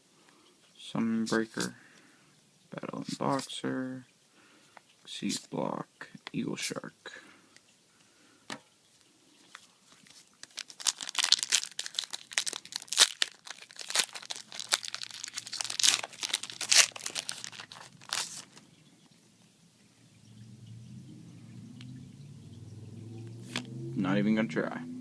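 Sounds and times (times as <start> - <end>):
foil wrapper tearing and crinkling: 10.1 - 18.6.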